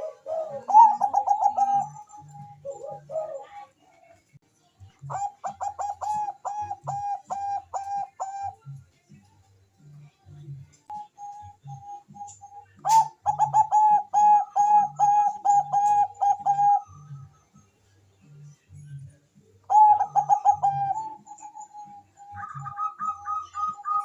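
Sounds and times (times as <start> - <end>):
dove cooing: 0.0 - 3.9, 5.0 - 8.8, 10.9 - 17.3, 19.6 - 24.0.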